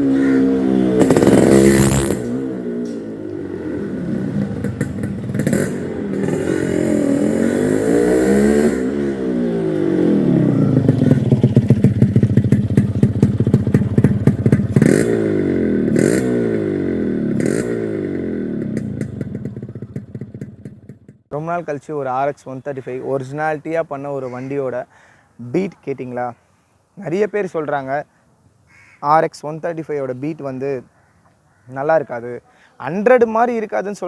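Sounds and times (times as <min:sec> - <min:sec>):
motorcycle engine revving: 0:00.0 - 0:21.3.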